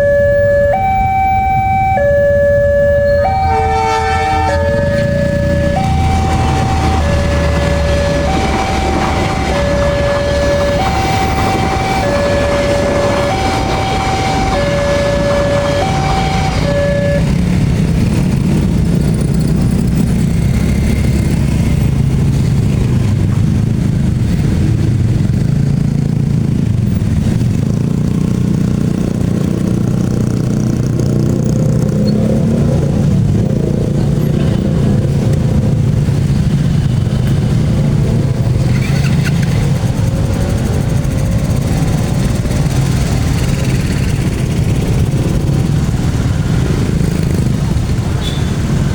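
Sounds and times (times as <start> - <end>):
two-tone warning signal: 0.0 - 17.9
low engine rumble: 0.0 - 25.4
engines revving: 0.0 - 48.9.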